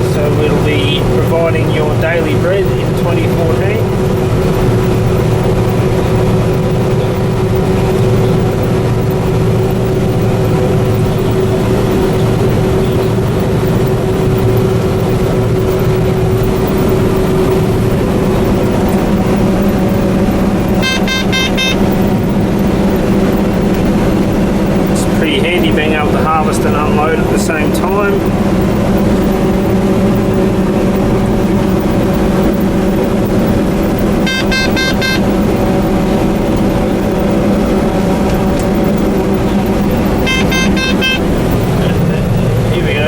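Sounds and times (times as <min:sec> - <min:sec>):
combine harvester engine drone: 0:00.0 - 0:43.0
quick high electronic beeps: 0:20.8 - 0:22.1, 0:34.3 - 0:35.3, 0:40.0 - 0:41.8.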